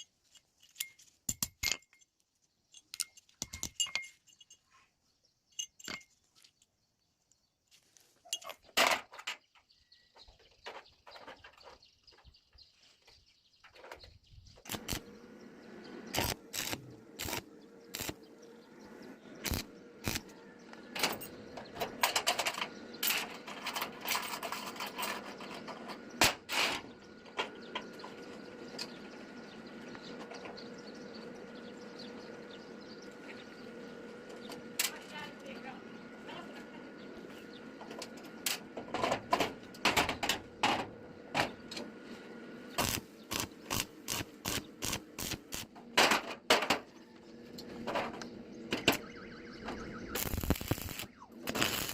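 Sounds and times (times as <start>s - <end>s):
metal clinks and knocks: 0.0s - 4.8s, 5.5s - 6.7s
steady machine hum: 14.7s - 23.4s, 25.2s - 51.9s.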